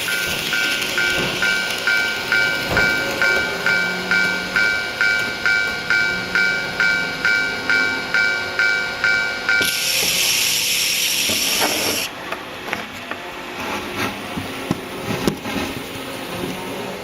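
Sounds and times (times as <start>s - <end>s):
two-tone electronic warning bell: 0.0s - 10.9s
hiss: 9.6s - 12.1s
model train wheels clicking on track: 9.6s - 12.1s.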